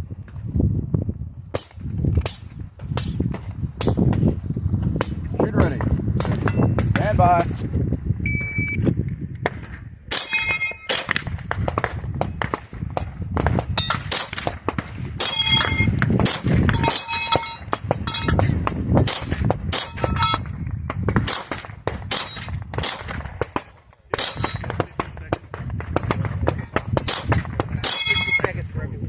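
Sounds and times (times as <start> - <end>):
shot timer beep: 8.3 - 8.8
pistol shots: 9.4 - 17.0, 17.6 - 28.4
steel plate ringing: 10.1 - 11.1, 15.2 - 16.0, 16.7 - 18.5, 19.2 - 20.4, 27.8 - 28.6.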